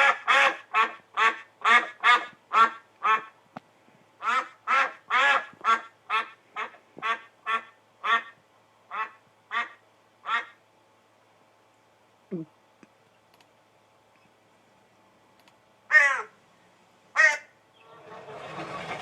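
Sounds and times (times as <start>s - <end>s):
duck quacking: 0.0s - 3.4s, 4.2s - 10.6s, 17.2s - 17.5s
sharp click: 15.4s - 15.6s.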